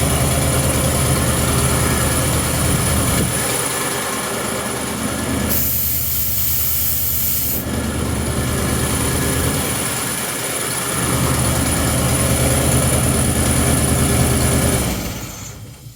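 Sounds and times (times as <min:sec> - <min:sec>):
engine running steadily: 0:00.0 - 0:15.9
loud air hiss: 0:05.5 - 0:07.7.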